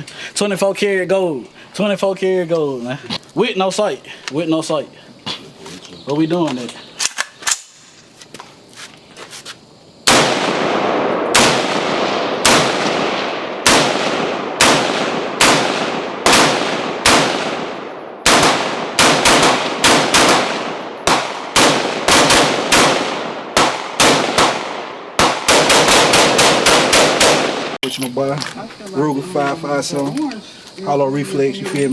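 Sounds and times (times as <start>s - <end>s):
gunshots: 10.1s - 27.8s.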